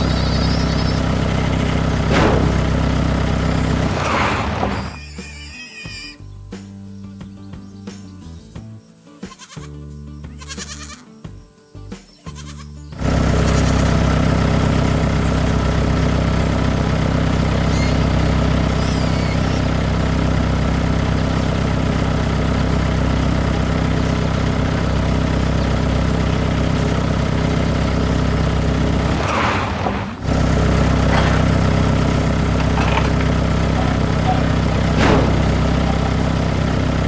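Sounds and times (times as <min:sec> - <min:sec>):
tractor engine running: 0:00.0 - 0:05.5, 0:12.4 - 0:37.0.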